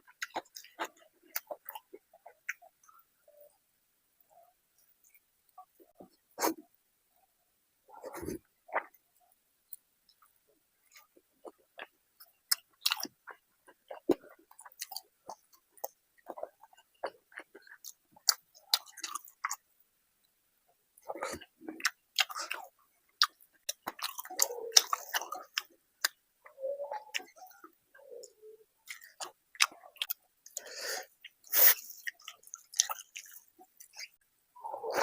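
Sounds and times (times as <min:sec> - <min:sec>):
close-up chewing with lip-smacks: 0:00.0 - 0:03.0, 0:09.7 - 0:19.6, 0:21.0 - 0:34.2.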